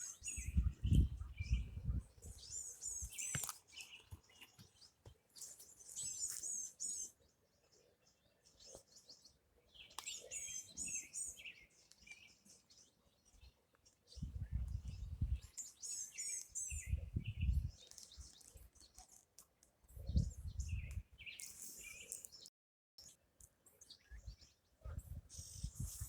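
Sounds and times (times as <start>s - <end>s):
birds chirping and singing: 0.0s - 26.0s.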